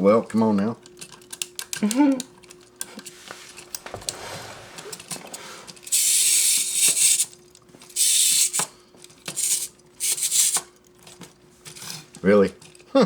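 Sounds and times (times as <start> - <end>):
clockwork motor gears whirring: 5.8 - 7.4.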